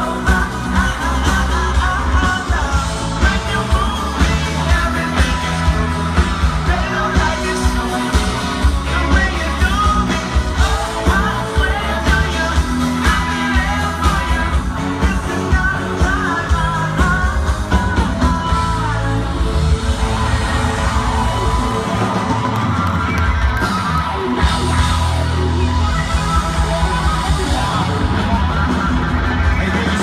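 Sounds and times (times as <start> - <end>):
person singing: 0.0 - 22.8
live pop-rock band: 0.0 - 30.0.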